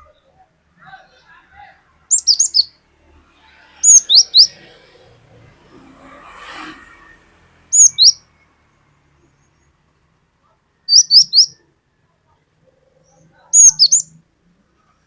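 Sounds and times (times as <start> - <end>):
bird singing whistled notes: 2.1 - 2.8, 3.8 - 4.6, 7.7 - 8.2, 10.9 - 11.6, 13.0 - 14.2.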